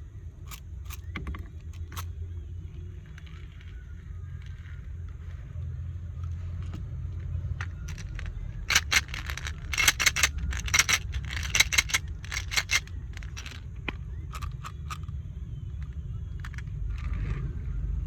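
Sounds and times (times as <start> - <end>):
small hard objects clicking: 0.5 - 2.0, 7.8 - 13.6, 14.3 - 15.1, 15.8 - 16.7.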